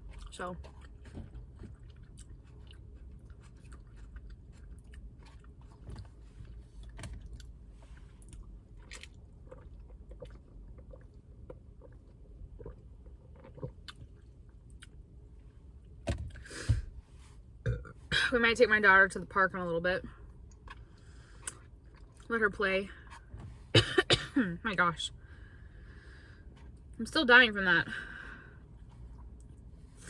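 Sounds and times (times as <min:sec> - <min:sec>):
person chewing salad: 0:00.0 - 0:15.2, 0:20.3 - 0:22.3.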